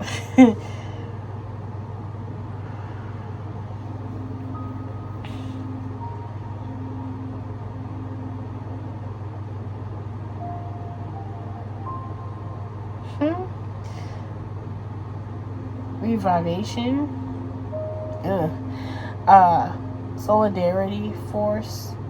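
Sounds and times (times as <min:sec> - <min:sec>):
steady low hum: 0:00.0 - 0:22.0
faint held tones: 0:02.4 - 0:14.3, 0:15.2 - 0:21.6.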